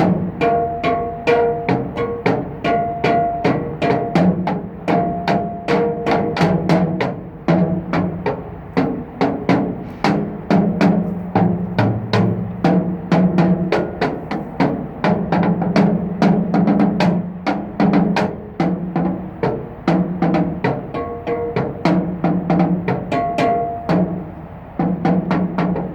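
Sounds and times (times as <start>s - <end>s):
sticks drumming on ringing metal: 0.0s - 14.8s, 20.3s - 24.2s.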